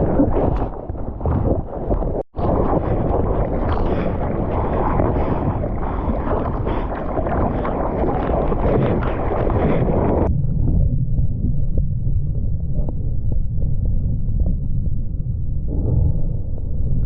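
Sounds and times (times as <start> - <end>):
rushing water: 0.0 - 10.3
muffled low rumble: 0.0 - 17.0
wind on camera microphone: 0.0 - 17.0.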